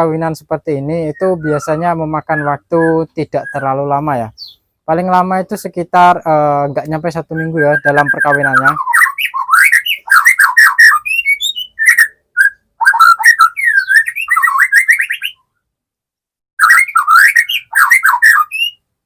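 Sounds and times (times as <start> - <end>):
bird singing whistled phrases: 1.0 - 4.6, 6.7 - 15.4, 16.6 - 18.8.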